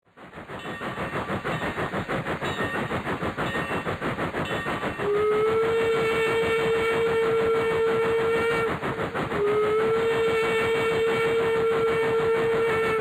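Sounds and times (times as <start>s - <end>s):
steam locomotive chuffing: 0.1s - 13.0s
steam whistle: 5.0s - 13.0s.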